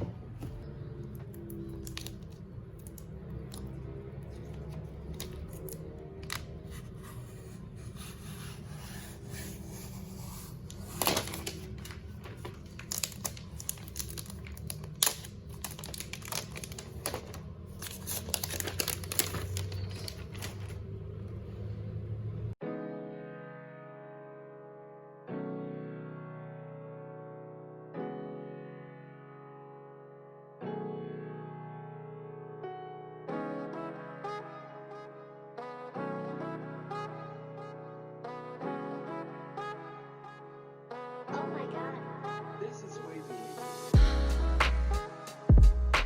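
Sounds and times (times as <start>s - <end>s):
plastic and paper crinkling: 1.4s - 6.4s, 10.7s - 21.0s.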